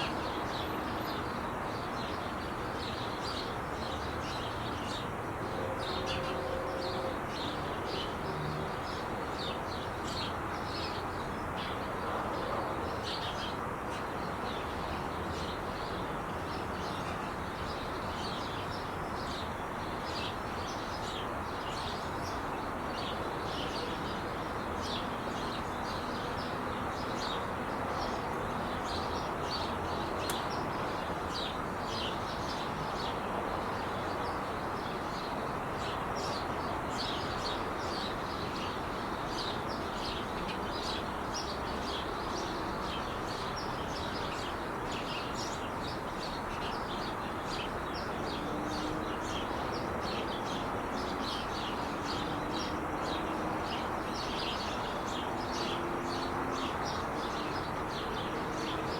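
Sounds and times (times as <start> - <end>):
small birds chirping: 34.0 - 58.9
freeway traffic rushing: 47.0 - 58.9.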